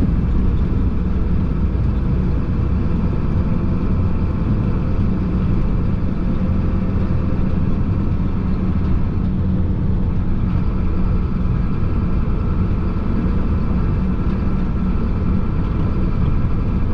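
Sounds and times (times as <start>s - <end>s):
truck diesel engine running: 0.0s - 16.9s.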